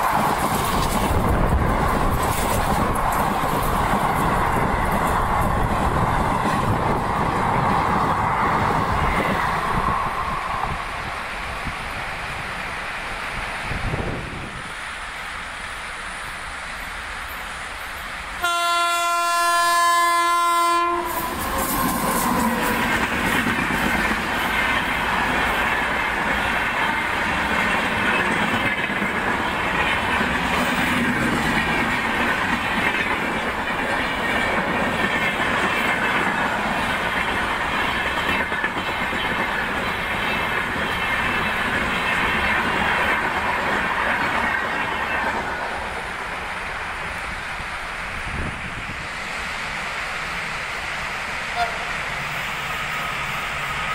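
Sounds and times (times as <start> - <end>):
wheels clacking over rail joints: 0.0 - 10.2, 21.1 - 47.6
train passing at speed: 0.0 - 53.9
train horn: 18.4 - 22.8, 51.5 - 52.1.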